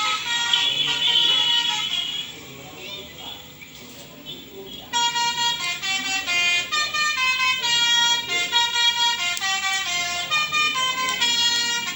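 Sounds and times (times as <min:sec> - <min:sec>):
musical bus horn tune: 0:00.0 - 0:02.5, 0:04.9 - 0:11.9.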